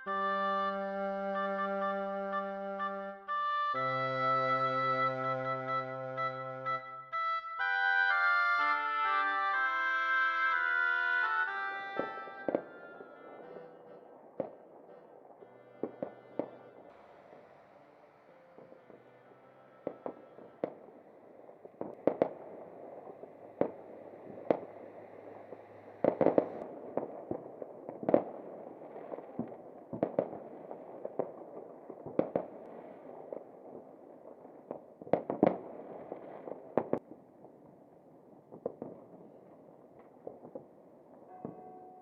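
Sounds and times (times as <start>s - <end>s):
distant fireworks rushing: 8.6s - 42.0s
firework bangs: 10.6s - 42.0s.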